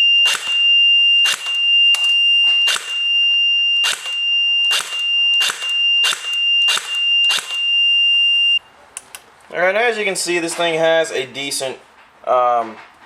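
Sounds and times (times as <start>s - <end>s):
steady high-pitched beep tone: 0.0s - 8.6s
airsoft gun shots cracking: 0.2s - 0.6s, 1.2s - 2.1s, 2.7s - 3.0s, 3.8s - 7.6s.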